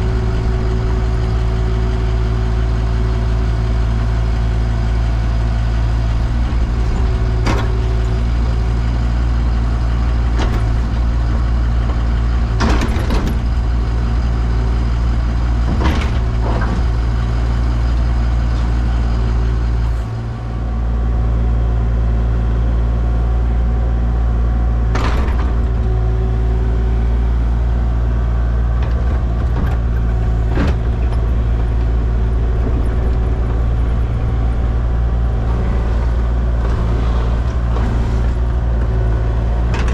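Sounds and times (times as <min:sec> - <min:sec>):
heavy engine droning: 0:00.0 - 0:39.9
sharp metallic knocks and clanks: 0:11.8 - 0:13.6.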